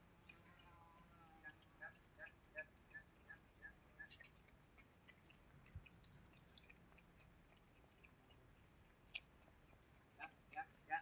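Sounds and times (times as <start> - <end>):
cat chewing crunchy food: 0.0 - 11.0.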